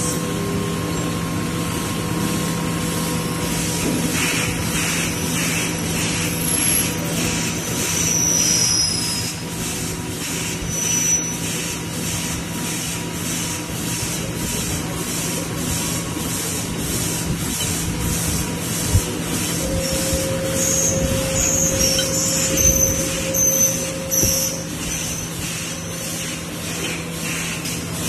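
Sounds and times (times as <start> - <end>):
lathe machine hum: 0.0 - 28.0
brief high squeals: 7.8 - 9.3
pulsing high hiss: 18.8 - 26.4.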